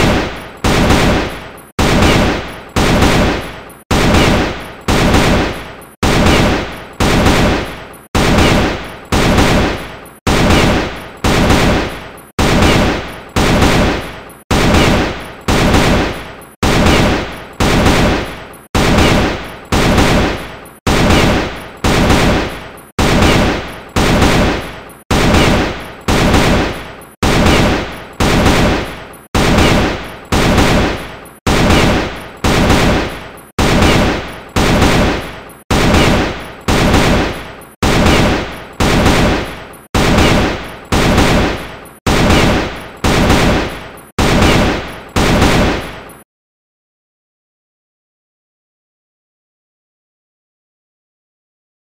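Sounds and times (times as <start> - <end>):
rifle gunshots echoing: 0.0 - 46.0.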